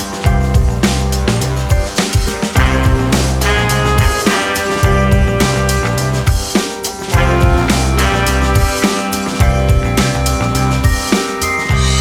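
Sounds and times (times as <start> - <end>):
drums bass and guitar music: 0.0 - 12.0.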